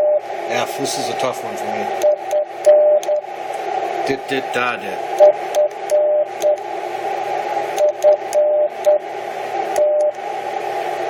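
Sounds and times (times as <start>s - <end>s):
receiver hiss: 0.0s - 11.0s
morse code beeps: 2.0s - 3.2s, 5.2s - 6.6s, 7.8s - 9.0s, 9.8s - 10.2s.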